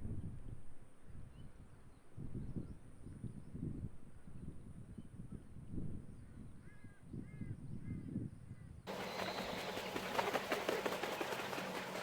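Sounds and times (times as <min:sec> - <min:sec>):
spoonbills calling: 0:08.9 - 0:12.0
steady low hum: 0:08.9 - 0:12.0.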